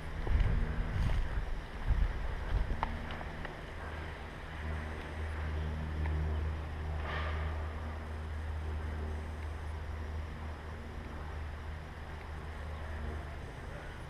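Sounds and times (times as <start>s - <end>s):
wind buffeting microphone: 0.0s - 8.5s.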